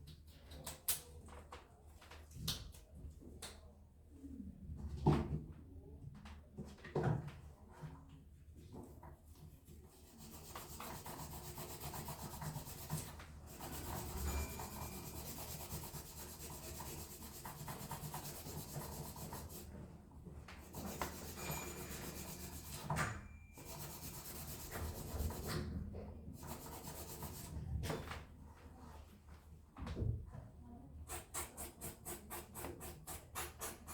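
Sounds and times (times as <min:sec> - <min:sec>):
nail file rubbing fingernail: 0:31.1 - 0:33.9.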